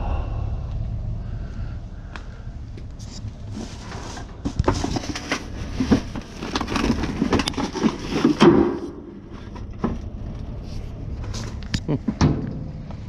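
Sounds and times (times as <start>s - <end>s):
junk being handled and shifted: 3.0s - 13.0s.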